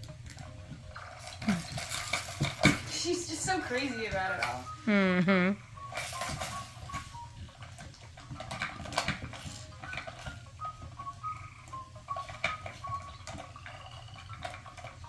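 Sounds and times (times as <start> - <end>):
puppies scuffling: 0.0 - 4.8, 5.8 - 15.0.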